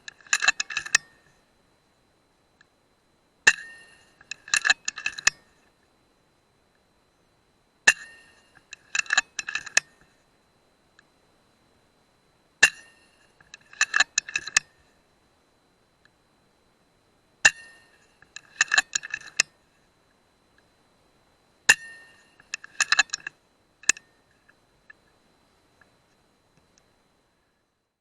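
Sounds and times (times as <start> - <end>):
metallic clicks: 0.0 - 1.1, 3.5 - 5.4, 7.9 - 9.9, 12.6 - 14.7, 17.5 - 19.5, 21.7 - 25.0.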